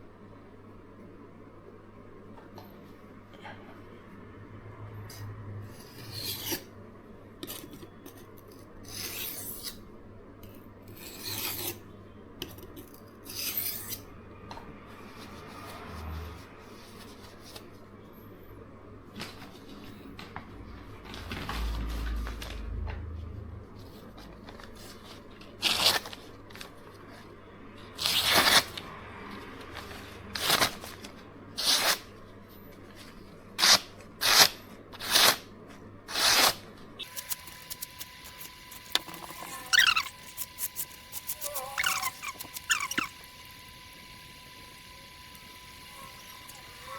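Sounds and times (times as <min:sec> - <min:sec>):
knife scraping on sharpening stone: 0:05.8 - 0:06.7, 0:10.9 - 0:11.8, 0:13.3 - 0:14.1.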